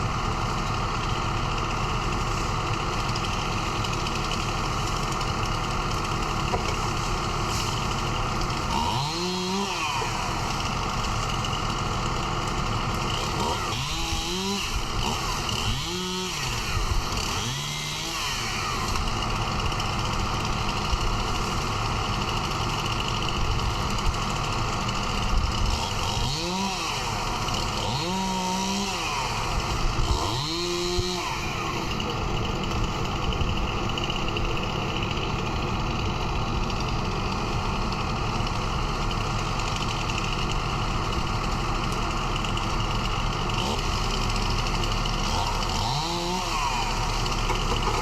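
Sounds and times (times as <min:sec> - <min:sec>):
engine running steadily: 0:00.0 - 0:48.0
small engine revving: 0:06.5 - 0:11.0, 0:12.9 - 0:19.5, 0:23.4 - 0:34.2, 0:39.6 - 0:48.0.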